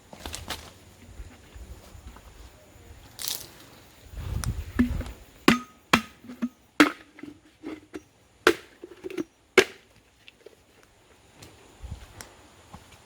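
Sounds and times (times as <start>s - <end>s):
sharp chopping strikes: 4.8s - 7.1s, 8.5s - 9.8s.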